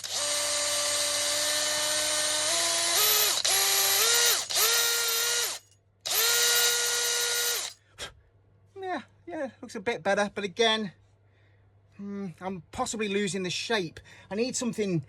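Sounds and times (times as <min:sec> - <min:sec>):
rotary tool whining: 0:00.0 - 0:07.8.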